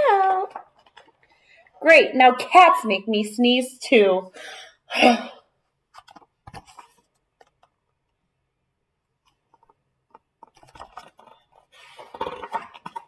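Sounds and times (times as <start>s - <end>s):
book pages rustling: 0.1s - 1.4s, 5.9s - 8.2s, 9.2s - 13.0s.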